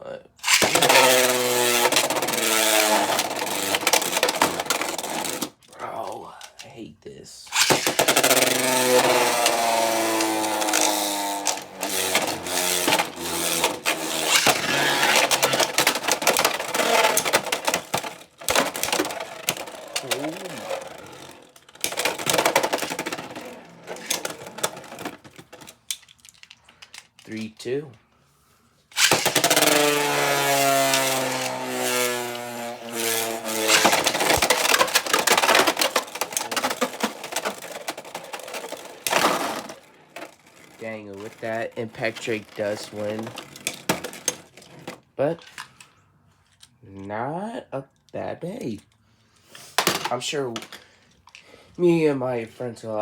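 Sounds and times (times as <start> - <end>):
spinning top whine: 0.4 - 5.6, 7.5 - 25.6, 29.0 - 43.4
spinning tops clacking: 0.4 - 5.6, 7.5 - 26.2, 29.0 - 44.6.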